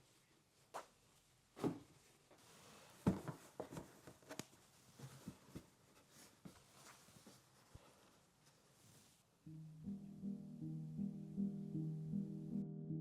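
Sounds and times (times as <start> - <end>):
soft rustles: 0.0 - 9.4.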